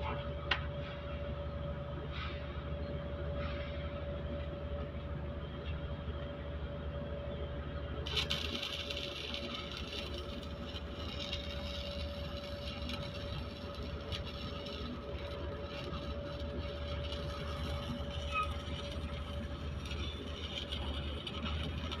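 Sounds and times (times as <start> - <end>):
welding machine hum: 7.3 - 22.0
arc welding crackling hiss: 8.0 - 22.0.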